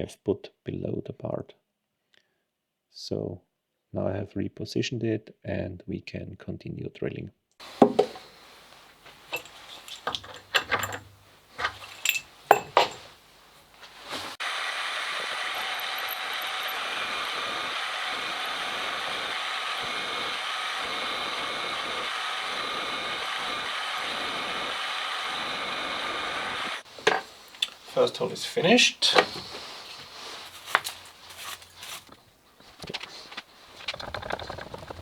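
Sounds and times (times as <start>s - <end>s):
milling machine drilling: 7.6s - 8.5s, 9.2s - 13.0s, 14.4s - 28.0s
tool handling clicks and knocks: 7.6s - 13.2s, 26.9s - 27.8s.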